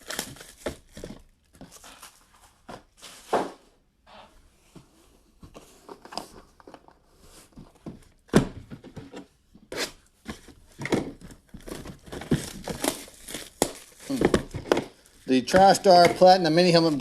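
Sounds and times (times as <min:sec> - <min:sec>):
plastic shrink-wrap crackling: 0:12.3 - 0:17.0
box knocking: 0:14.1 - 0:14.9, 0:15.5 - 0:16.5.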